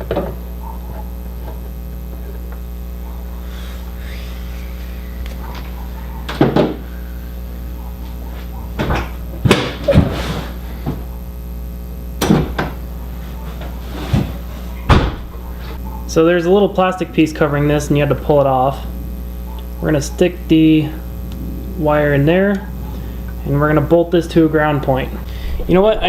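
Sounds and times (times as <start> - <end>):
low hum: 0.0 - 9.4, 17.4 - 26.0.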